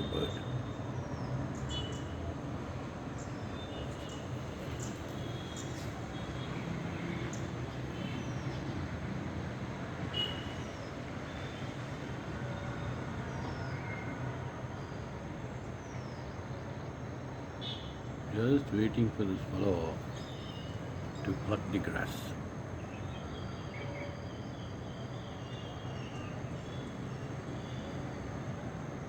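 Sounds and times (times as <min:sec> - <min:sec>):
low traffic rumble: 0:00.0 - 0:29.0
small birds chirping: 0:03.2 - 0:06.5, 0:14.8 - 0:28.0.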